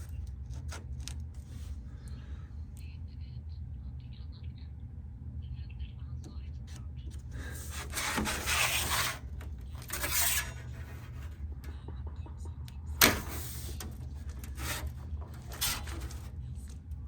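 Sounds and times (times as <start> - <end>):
steady low hum: 0.0 - 17.0
scraping and rubbing on sheet metal: 7.2 - 11.8, 12.9 - 16.8.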